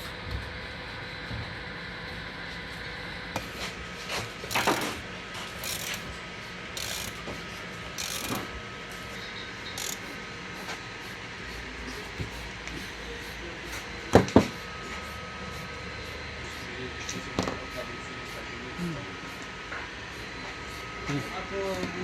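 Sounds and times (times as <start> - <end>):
metal tools clicking and scraping: 4.4 - 5.0, 5.6 - 6.1, 6.8 - 7.2, 8.0 - 8.5, 9.2 - 10.2.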